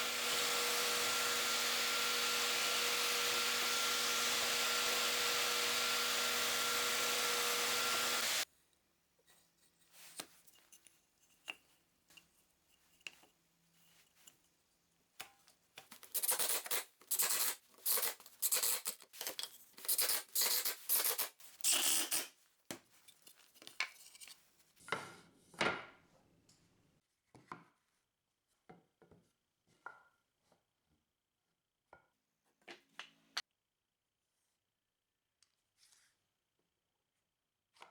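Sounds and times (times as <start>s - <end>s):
rough rasping strokes on wood: 0.0s - 8.4s.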